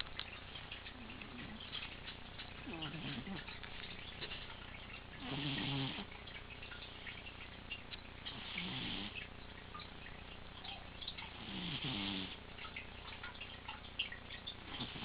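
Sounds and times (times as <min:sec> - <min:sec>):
cat snoring: 0:02.6 - 0:03.5, 0:05.2 - 0:06.1, 0:08.3 - 0:09.2, 0:11.3 - 0:12.4, 0:14.7 - 0:15.0.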